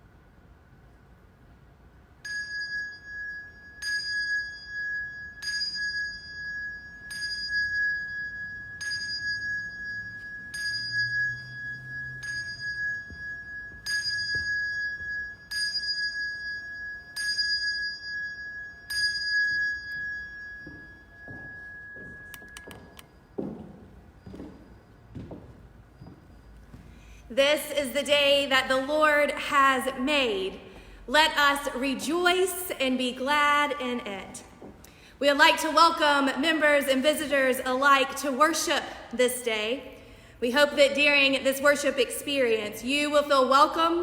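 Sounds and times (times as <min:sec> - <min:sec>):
high-pitched bell struck: 0:02.2 - 0:25.1.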